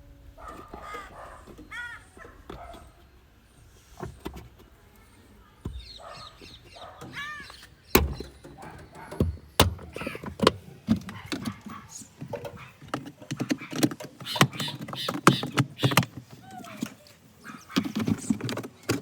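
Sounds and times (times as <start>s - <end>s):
crow cawing: 0.6s - 2.4s.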